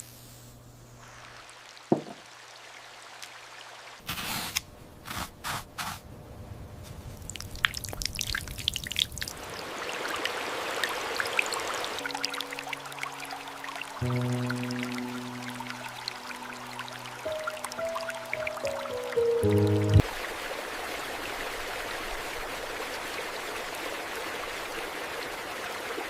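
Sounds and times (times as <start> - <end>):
water splashes: 1.1 - 4.0, 7.0 - 26.0
running water pouring: 7.1 - 20.2
water drip plink: 7.3 - 9.4, 11.2 - 20.0
steady music tones: 12.0 - 20.0.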